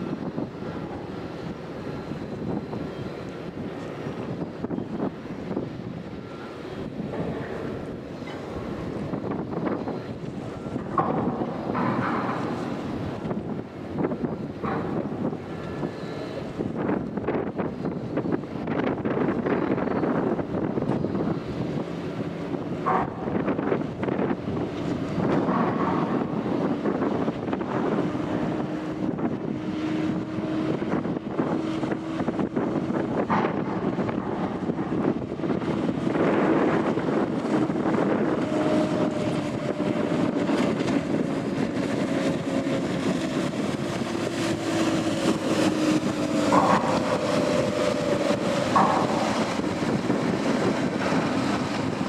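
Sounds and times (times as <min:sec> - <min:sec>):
boat engine drone: 0:00.0 - 0:52.0
wind buffeting microphone: 0:00.0 - 0:52.0
rushing water: 0:19.6 - 0:52.0.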